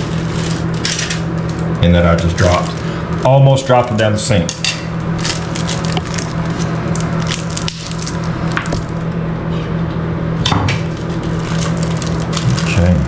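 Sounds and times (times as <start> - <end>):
plastic bag crinkling: 0.0 - 4.1, 5.0 - 9.2, 10.8 - 13.0
exhaust fan humming: 0.0 - 13.0.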